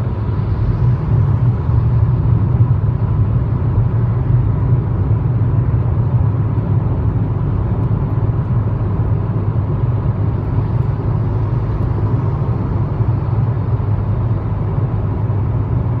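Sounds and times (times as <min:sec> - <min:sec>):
car cabin road and engine rumble: 0:00.0 - 0:16.0.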